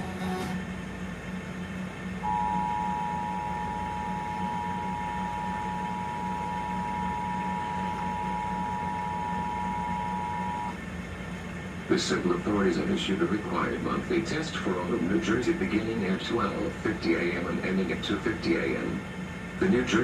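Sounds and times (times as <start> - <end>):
low steady hum: 0.0 - 20.0
two-tone alert signal: 2.2 - 10.8.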